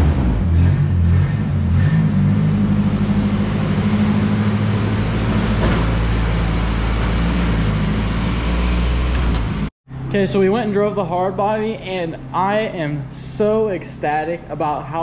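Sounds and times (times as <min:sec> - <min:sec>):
pickup truck engine running: 0:02.6 - 0:08.4.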